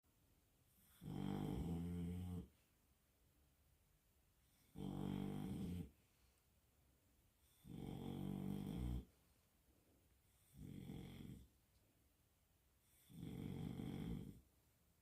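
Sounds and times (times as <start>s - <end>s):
dog snoring: 0.7s - 2.5s, 4.5s - 6.0s, 7.4s - 9.2s, 10.3s - 11.5s, 12.8s - 14.5s.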